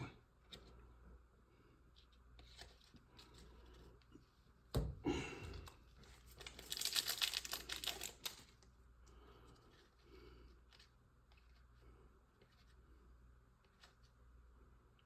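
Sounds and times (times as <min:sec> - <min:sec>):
card pack wrapper crinkling: 0:06.2 - 0:08.7.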